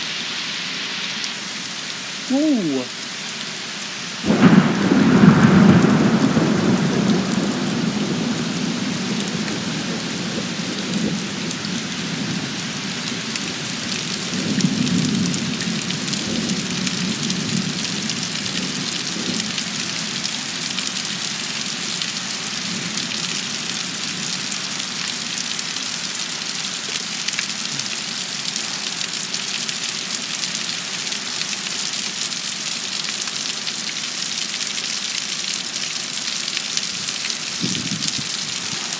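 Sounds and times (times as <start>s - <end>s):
steady rain: 0.0s - 38.9s
thunder cracking and rumbling: 4.3s - 19.6s.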